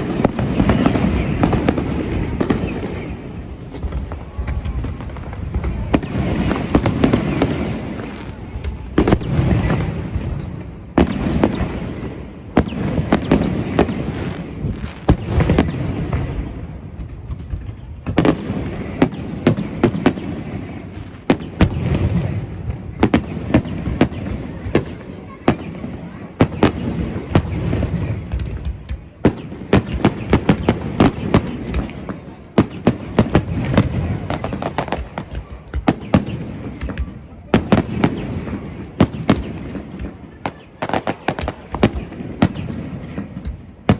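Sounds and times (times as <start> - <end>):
fireworks bangs and crackles: 0.0 - 43.9.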